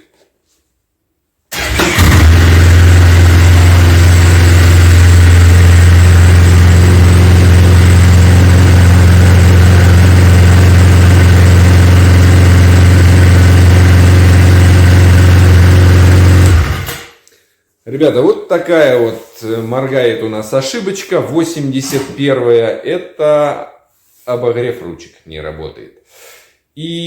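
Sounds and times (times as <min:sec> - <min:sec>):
snowmobile engine idling: 0:02.0 - 0:16.9.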